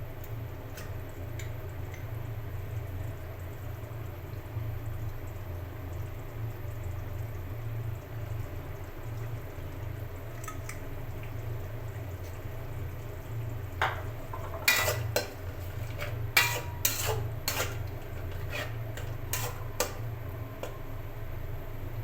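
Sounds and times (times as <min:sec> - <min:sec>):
utensil scraping cooking pot: 0:13.8 - 0:20.8.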